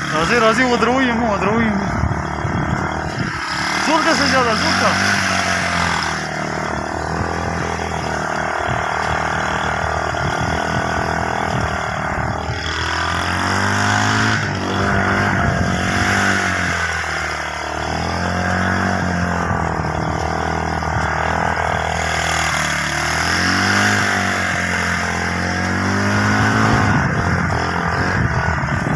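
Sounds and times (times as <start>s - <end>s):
motorcycle engine running: 0.0s - 28.9s.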